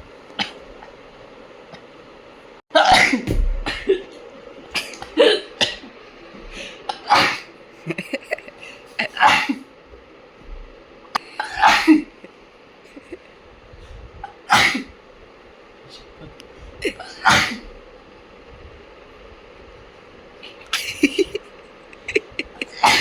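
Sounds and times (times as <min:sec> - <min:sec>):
person sneezing: 0:09.0 - 0:09.6, 0:11.4 - 0:12.1, 0:22.7 - 0:23.0.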